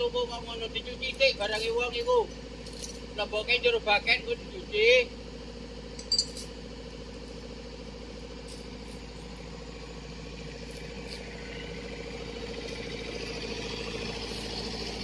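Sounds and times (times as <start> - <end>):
engine idling: 0.0 - 15.0.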